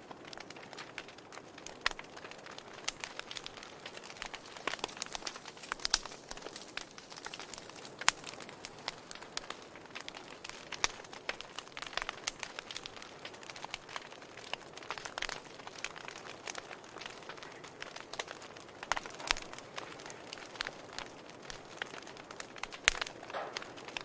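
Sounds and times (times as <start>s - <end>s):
wood fire crackling: 0.0s - 24.0s.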